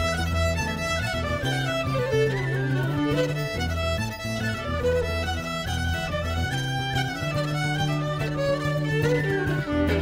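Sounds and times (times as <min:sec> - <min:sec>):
fiddle playing a quick melody: 0:00.0 - 0:10.0.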